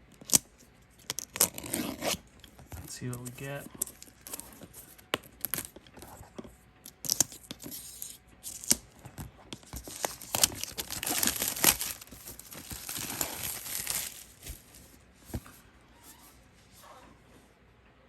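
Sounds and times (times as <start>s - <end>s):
plastic wrap crinkling and tearing: 2.8s - 5.7s, 6.9s - 15.0s.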